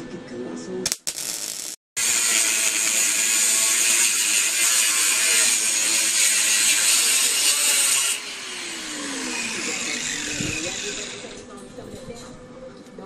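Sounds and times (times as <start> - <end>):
welder arc crackling: 0.9 - 11.5.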